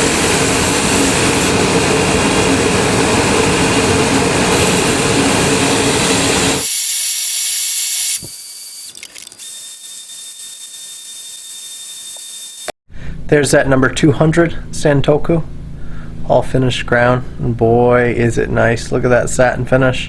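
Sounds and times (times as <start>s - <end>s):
power grinder grinding steel: 4.5s - 12.8s.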